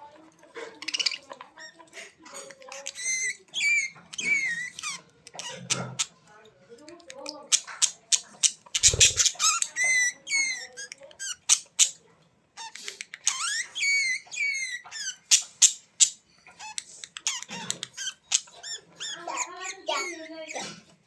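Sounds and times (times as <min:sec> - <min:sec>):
bird squeaky calls: 0:07.9 - 0:10.7.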